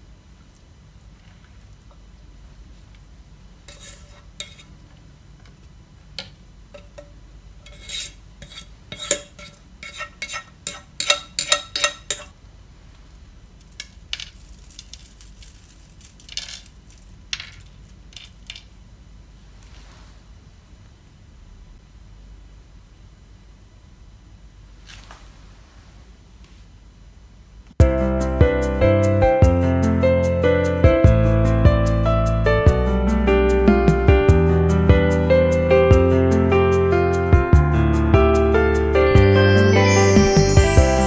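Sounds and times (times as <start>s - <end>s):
utensil knocking and scraping a pan: 3.7s - 4.7s, 6.7s - 12.3s.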